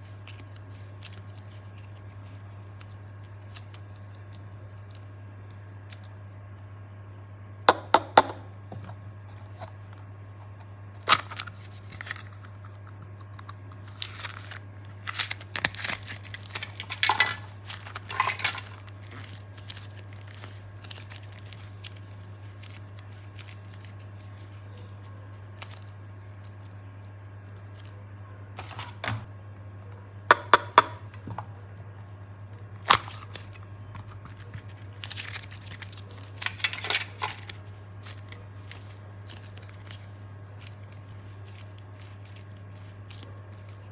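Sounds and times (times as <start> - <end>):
crinkling and tearing: 0.0 - 6.2, 9.3 - 26.8, 32.6 - 43.9
steady low hum: 0.0 - 43.9.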